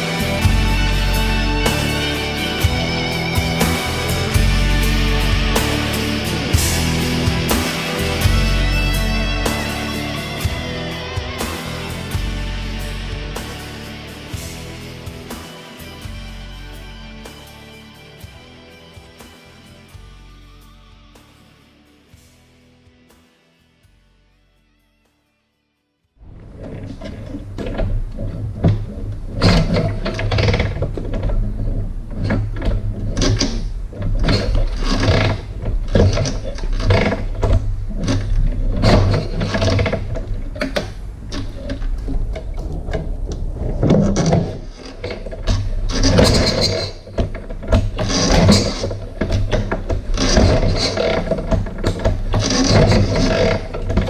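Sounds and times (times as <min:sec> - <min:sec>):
mechanical clattering and knocks: 0:26.3 - 0:54.0.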